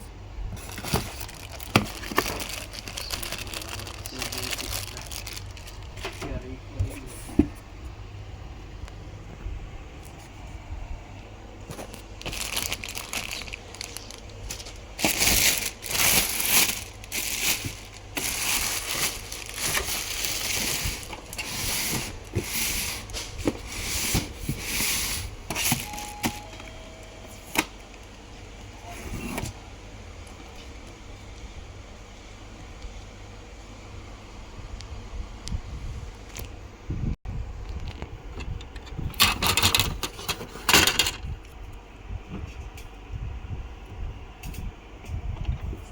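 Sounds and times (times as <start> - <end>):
plastic wrap crinkling and tearing: 0.6 - 6.2, 11.7 - 23.1.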